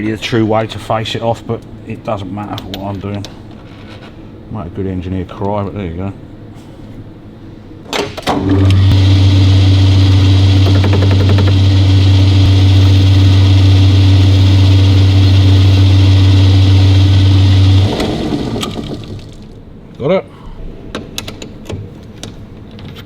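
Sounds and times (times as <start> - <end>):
lathe cutting steel: 8.3 - 19.4
lathe motor hum: 8.3 - 19.6.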